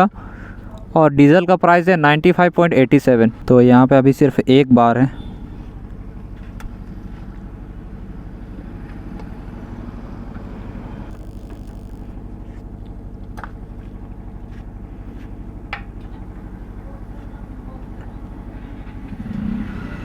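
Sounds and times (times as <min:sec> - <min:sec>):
engine idling: 0:05.1 - 0:20.0.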